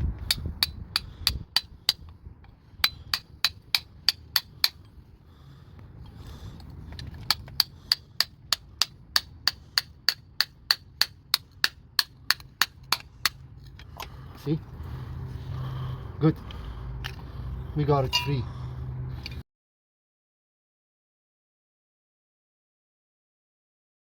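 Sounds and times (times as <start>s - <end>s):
hammer blows on rusted metal: 2.8s - 4.9s.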